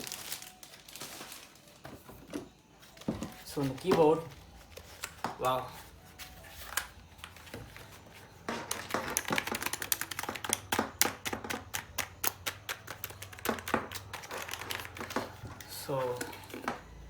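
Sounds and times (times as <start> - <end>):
keyboard keys clicking: 8.7 - 16.3.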